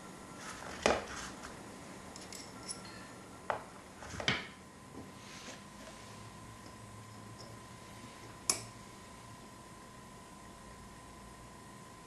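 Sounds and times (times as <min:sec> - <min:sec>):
light metal tinkles: 0:02.2 - 0:03.1.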